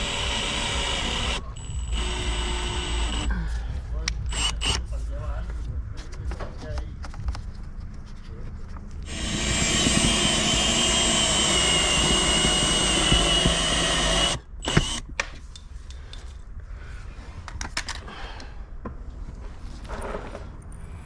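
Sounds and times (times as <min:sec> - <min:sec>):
power tool whining: 0:00.0 - 0:03.3, 0:04.3 - 0:04.8, 0:09.1 - 0:15.0.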